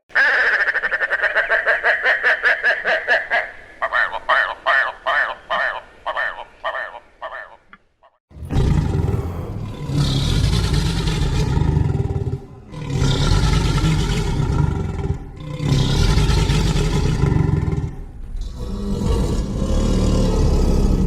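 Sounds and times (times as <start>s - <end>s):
low rough dinosaur calls: 8.4s - 21.0s.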